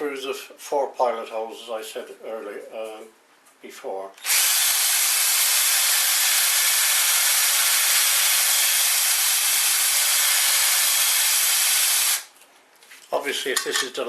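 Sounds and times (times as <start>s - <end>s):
electric drill running: 4.2s - 12.3s.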